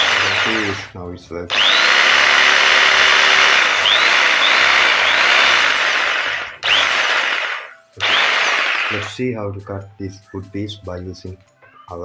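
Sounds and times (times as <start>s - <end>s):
electric jigsaw running: 0.0s - 9.2s.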